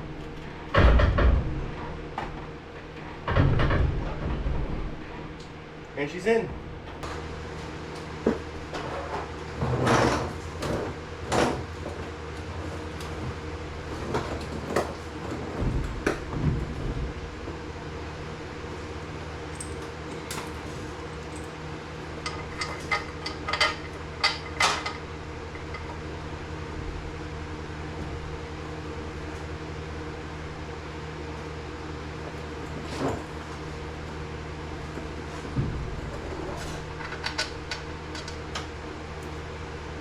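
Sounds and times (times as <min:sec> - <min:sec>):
steady low hum: 0:00.0 - 0:40.0
metal clanks and knocks: 0:00.3 - 0:05.3, 0:22.2 - 0:26.0.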